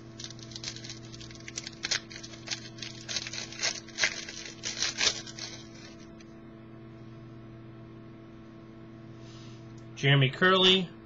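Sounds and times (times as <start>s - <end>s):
cards and packaging crinkling: 0.0s - 6.2s
steady electrical hum: 0.0s - 11.0s.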